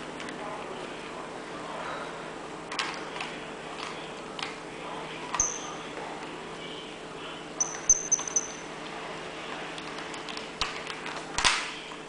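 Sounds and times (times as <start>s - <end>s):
steady low hum: 0.0s - 12.0s
short high squeaks: 5.4s - 5.8s, 7.6s - 8.7s.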